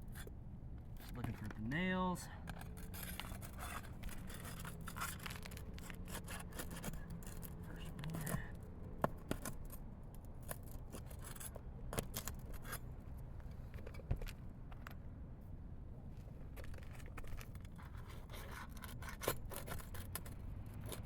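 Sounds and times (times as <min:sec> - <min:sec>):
roof shingles scraping and clicking: 0:02.4 - 0:08.4.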